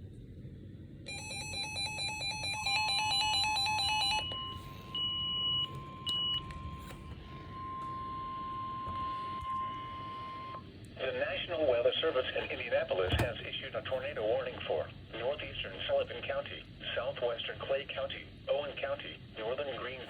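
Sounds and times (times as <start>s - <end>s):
steady warning tone: 1.0s - 14.7s.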